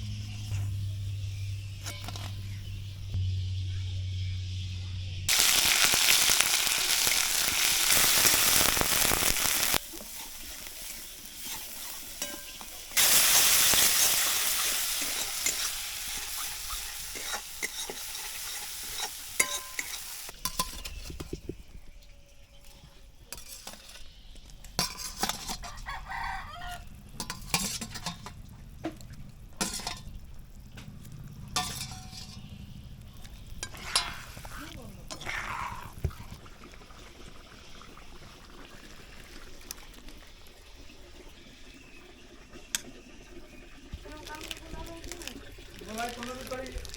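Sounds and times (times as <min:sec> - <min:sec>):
food sizzling in hot oil: 0:05.3 - 0:21.8, 0:23.3 - 0:46.9
utensil knocking and scraping pan: 0:11.4 - 0:21.5, 0:24.8 - 0:25.8, 0:27.2 - 0:28.4, 0:31.6 - 0:32.4.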